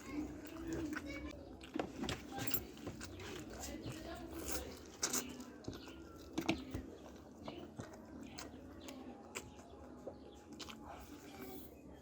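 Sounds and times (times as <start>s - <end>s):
person chewing with mouth smacks: 4.8s - 11.6s.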